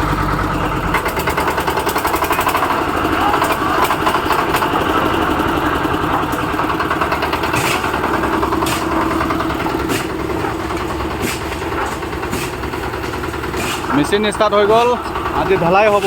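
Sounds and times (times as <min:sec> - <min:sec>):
concrete mixer engine chugging: 0:00.0 - 0:16.0.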